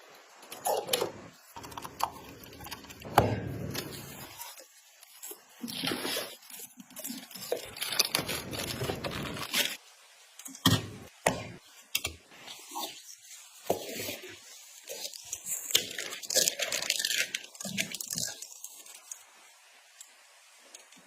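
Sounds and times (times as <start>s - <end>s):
packaging rustling: 0.4s - 9.8s, 14.9s - 19.3s.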